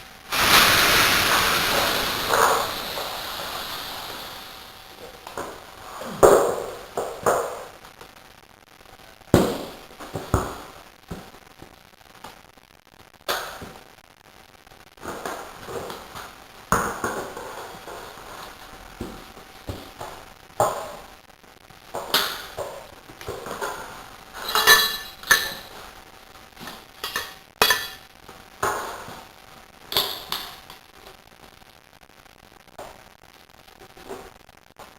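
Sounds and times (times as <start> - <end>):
metal tools clinking on wheel rim: 24.4 - 25.7, 27.0 - 28.0.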